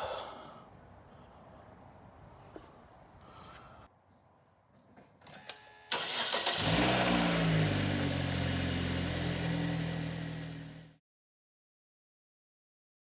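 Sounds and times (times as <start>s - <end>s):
car engine starting and idling: 5.3s - 11.0s.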